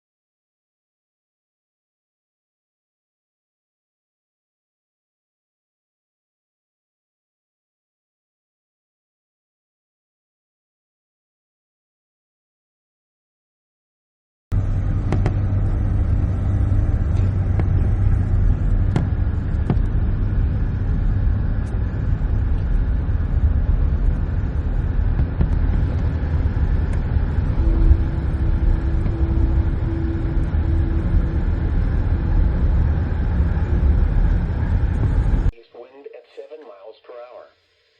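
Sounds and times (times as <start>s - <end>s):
steady low rumble: 14.5s - 37.2s
faint hum: 14.5s - 37.9s.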